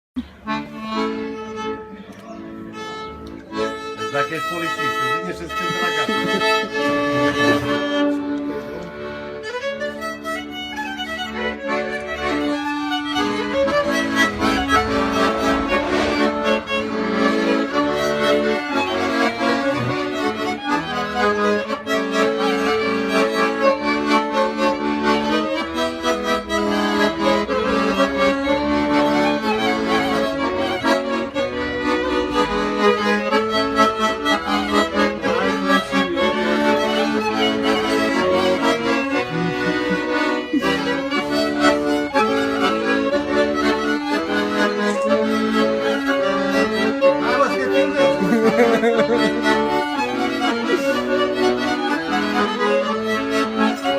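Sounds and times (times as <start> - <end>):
folk music on accordion: 0.0 - 53.9.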